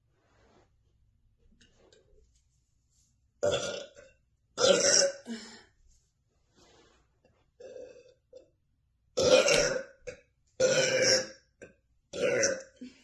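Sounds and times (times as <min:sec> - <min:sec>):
woman burping: 0:03.4 - 0:04.0, 0:04.6 - 0:05.6, 0:09.2 - 0:09.9, 0:10.6 - 0:11.3, 0:12.2 - 0:13.0.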